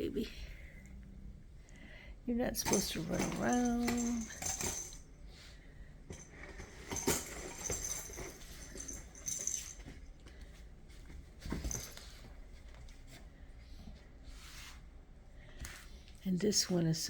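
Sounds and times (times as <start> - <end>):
toys knocking and rattling: 2.6 - 5.1, 6.1 - 10.0.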